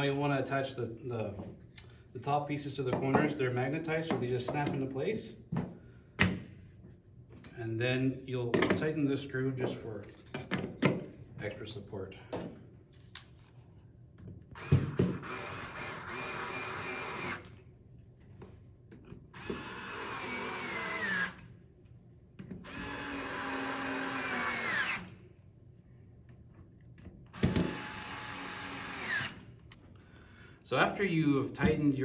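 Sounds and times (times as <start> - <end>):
power drill tightening screws: 14.6 - 17.5, 19.4 - 21.4, 22.6 - 25.1, 27.4 - 29.4.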